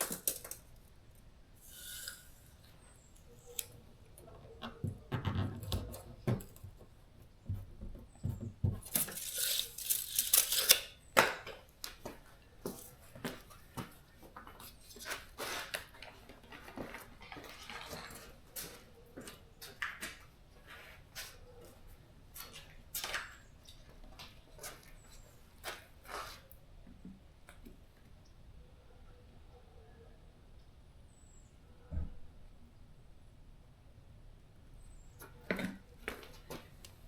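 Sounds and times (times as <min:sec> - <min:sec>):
taps clicks and rustles of handwork: 0:00.0 - 0:00.8.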